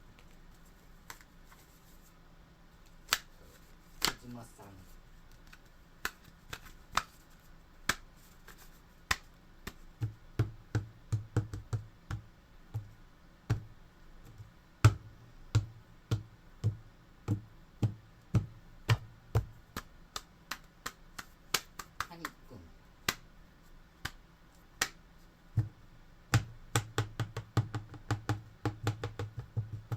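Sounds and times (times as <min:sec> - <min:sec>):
hand percussion snaps and taps: 0:03.1 - 0:03.3, 0:05.4 - 0:07.2, 0:07.8 - 0:09.9, 0:18.9 - 0:22.4, 0:23.0 - 0:23.3, 0:24.0 - 0:24.2, 0:24.8 - 0:25.0.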